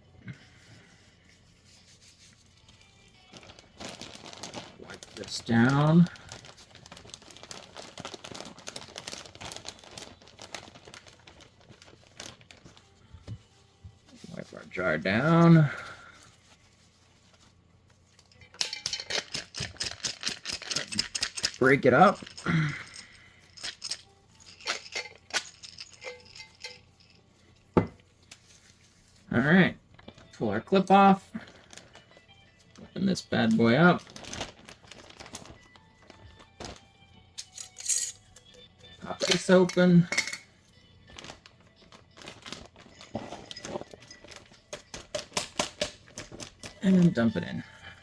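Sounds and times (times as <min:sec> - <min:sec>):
plastic bag crinkling: 0:03.0 - 0:13.3, 0:18.6 - 0:27.4, 0:30.9 - 0:32.2, 0:32.8 - 0:36.8, 0:41.0 - 0:47.9
glass jar knocks and clinks: 0:27.8 - 0:28.0.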